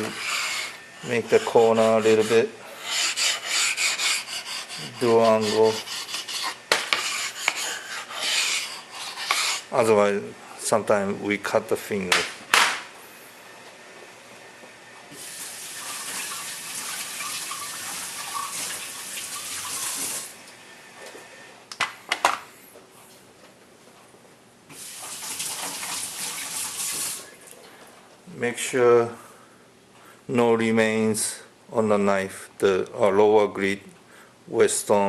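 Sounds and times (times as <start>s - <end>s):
tap water running onto knife: 15.2s - 20.3s, 24.8s - 27.2s.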